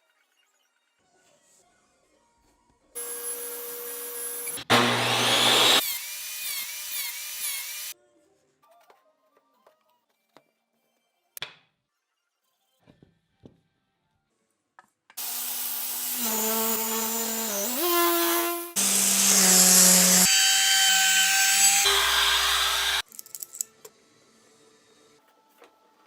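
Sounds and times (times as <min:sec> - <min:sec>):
power tool motor whine: 0:03.0 - 0:07.9, 0:15.2 - 0:23.0
wood cutting noise: 0:03.0 - 0:08.0, 0:15.2 - 0:23.0.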